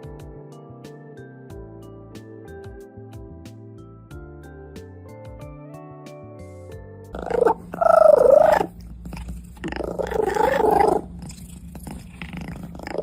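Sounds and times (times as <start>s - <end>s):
cat meowing: 7.2s - 8.7s, 9.7s - 11.1s.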